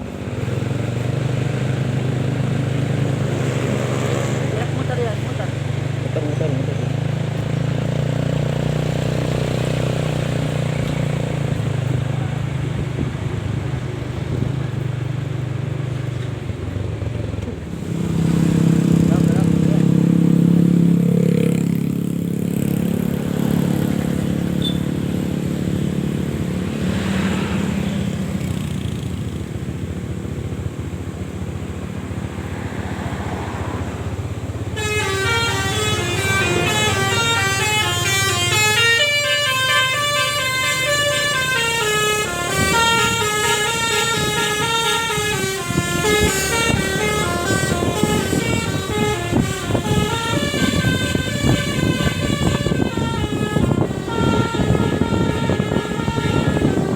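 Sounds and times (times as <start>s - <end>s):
low vehicle drone: 17.3s - 56.9s
musical air horn melody: 34.7s - 56.9s.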